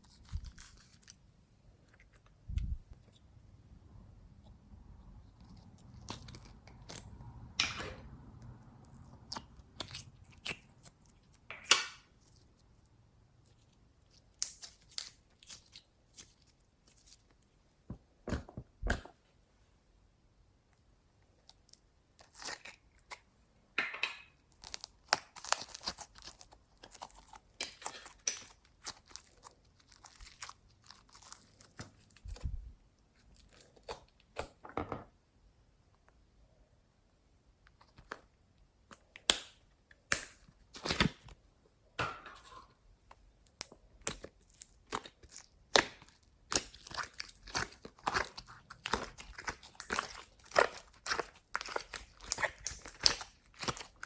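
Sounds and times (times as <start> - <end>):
slime crackling and popping: 13.5 - 17.2, 24.5 - 32.4, 43.5 - 54.0.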